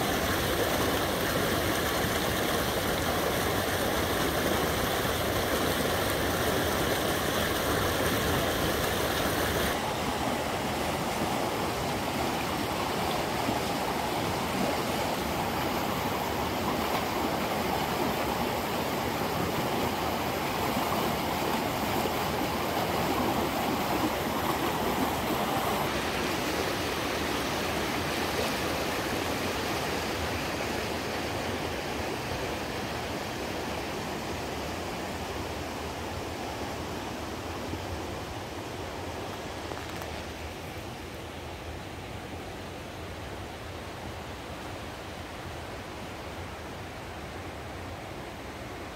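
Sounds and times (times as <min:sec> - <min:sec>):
river rapids rushing: 0:00.0 - 0:36.4.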